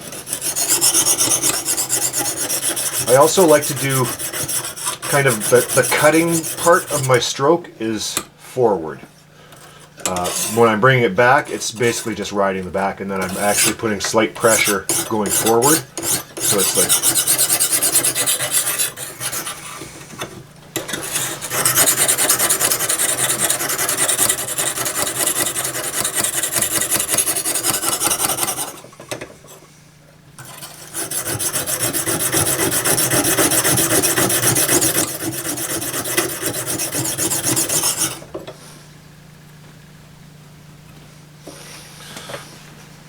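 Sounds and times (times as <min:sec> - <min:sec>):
sharpening hone rasping on stone: 0:00.0 - 0:07.1, 0:14.5 - 0:19.6, 0:20.9 - 0:28.8, 0:30.4 - 0:38.2.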